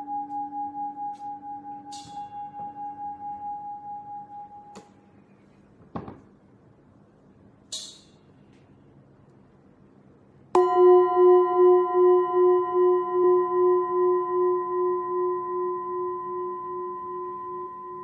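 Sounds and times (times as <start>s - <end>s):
singing bowl struck and ringing: 0.0s - 4.8s, 10.6s - 18.0s.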